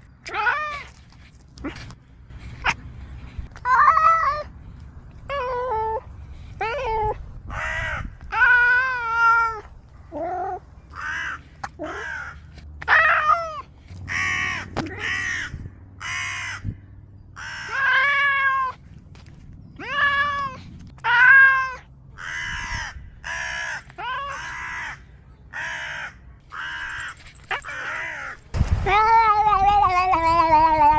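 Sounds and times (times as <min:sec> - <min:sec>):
cat meowing and yowling: 0:08.3 - 0:10.6, 0:17.6 - 0:18.8, 0:19.8 - 0:21.8, 0:27.5 - 0:30.9.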